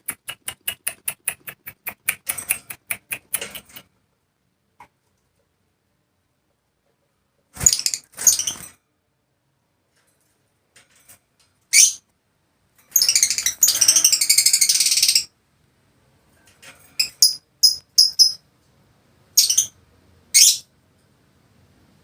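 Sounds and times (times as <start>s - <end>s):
lovebird chirping and chattering: 7.6s - 8.6s, 11.7s - 12.0s, 12.9s - 15.3s, 17.0s - 18.4s, 19.3s - 20.7s.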